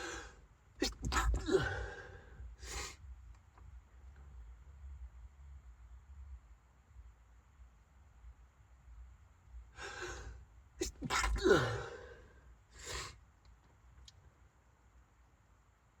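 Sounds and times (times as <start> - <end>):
gasping in-breath: 0.0 - 3.0, 9.8 - 13.2
person sneezing: 0.0 - 3.0, 9.8 - 12.2
short breath out: 0.0 - 3.0, 9.8 - 13.2.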